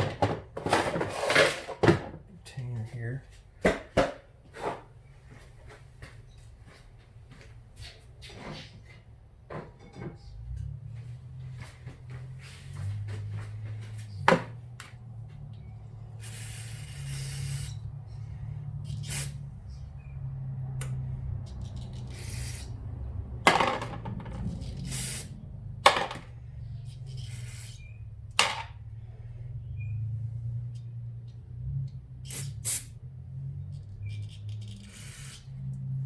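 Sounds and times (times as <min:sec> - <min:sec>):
hissing spray: 0:16.2 - 0:17.8, 0:19.0 - 0:19.4, 0:24.8 - 0:25.4, 0:34.8 - 0:35.7.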